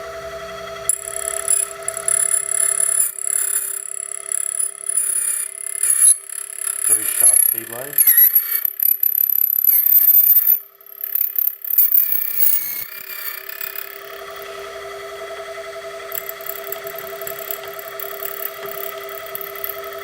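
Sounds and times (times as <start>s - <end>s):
steady motor whine: 0.0s - 10.0s, 10.6s - 20.0s
metal screeching of key cutter: 0.9s - 14.4s, 16.1s - 20.0s.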